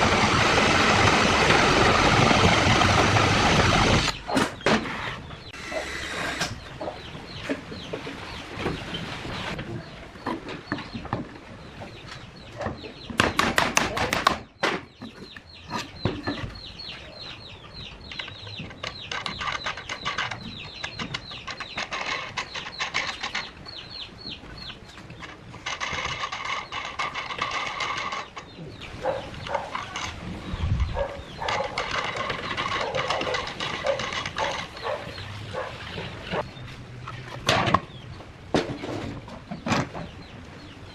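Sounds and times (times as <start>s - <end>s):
chicks peeping: 5.2s - 13.2s, 14.9s - 25.3s, 28.2s - 36.7s
chickens clucking: 5.4s - 13.1s, 15.0s - 40.8s.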